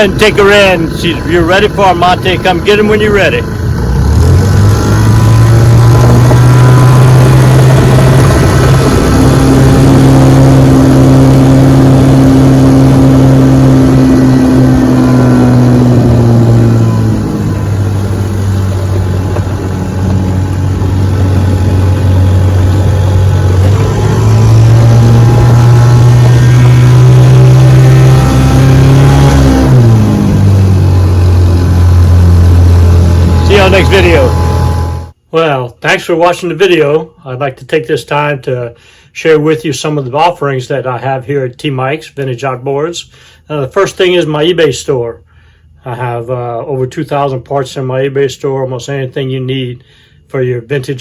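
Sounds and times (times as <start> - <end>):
outboard motor running: 0.0 - 35.2.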